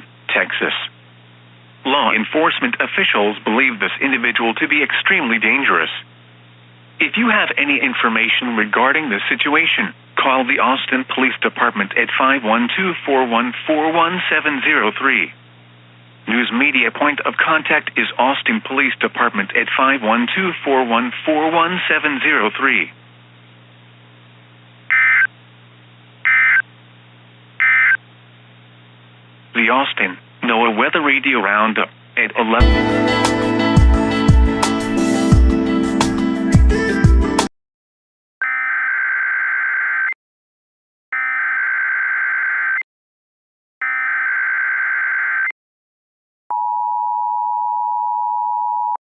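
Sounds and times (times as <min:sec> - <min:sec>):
faint steady hum: 0:00.0 - 0:32.6
digital data tone bursts: 0:24.9 - 0:25.3, 0:26.2 - 0:26.6.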